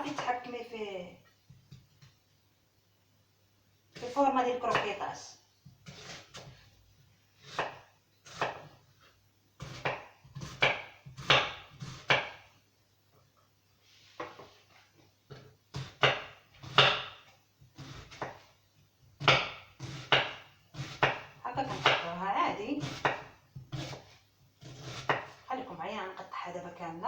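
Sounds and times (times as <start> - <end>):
knife slicing onion on cutting board: 5.8 - 6.6, 7.4 - 8.8, 9.6 - 12.4, 15.7 - 18.4, 19.2 - 25.5.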